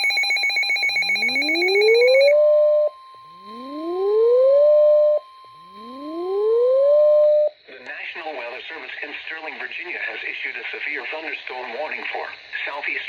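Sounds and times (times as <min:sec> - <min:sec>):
steady alarm tone: 0:00.0 - 0:07.7
rapid warbling beep: 0:00.9 - 0:06.7
rising siren-like whoop: 0:01.0 - 0:02.4, 0:03.3 - 0:07.5.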